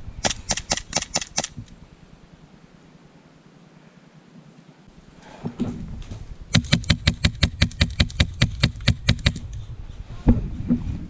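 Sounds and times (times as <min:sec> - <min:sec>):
airsoft gun rapid firing: 0:00.2 - 0:01.6, 0:06.5 - 0:09.4.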